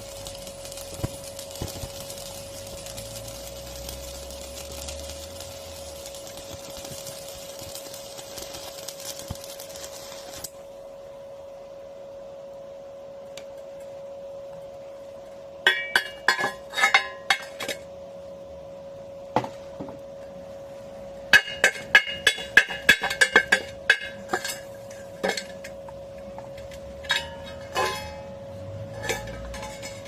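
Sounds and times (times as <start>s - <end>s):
welding arc crackling: 0.0s - 10.7s, 21.2s - 30.0s
welder machine whine: 0.0s - 30.0s.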